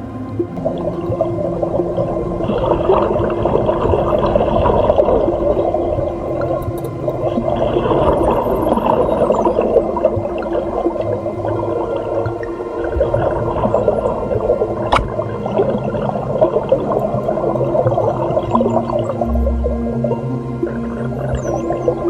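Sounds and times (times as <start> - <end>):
gurgling water: 0.0 - 22.0
dolphin whistle: 21.1 - 22.0.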